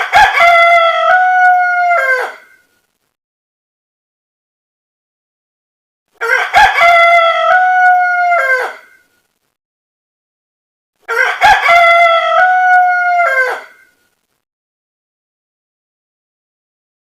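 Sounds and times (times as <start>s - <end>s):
rooster crowing: 0.0s - 2.6s, 6.2s - 9.0s, 11.0s - 14.0s.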